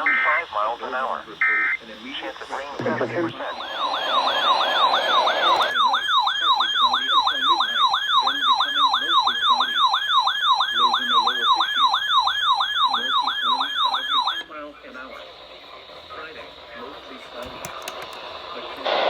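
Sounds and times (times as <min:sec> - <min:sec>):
electronic siren wailing: 0:03.4 - 0:14.4.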